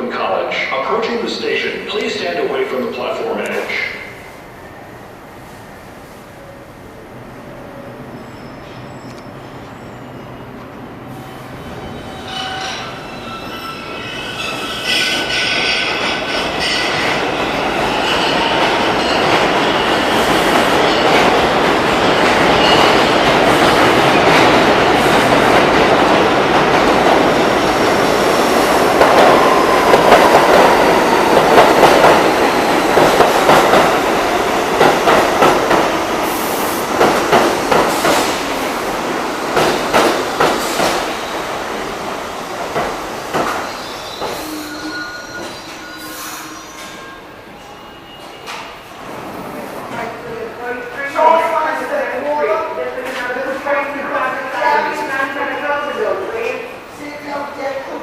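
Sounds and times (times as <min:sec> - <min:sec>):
train wheels rumbling on rails: 0:11.1 - 0:47.0.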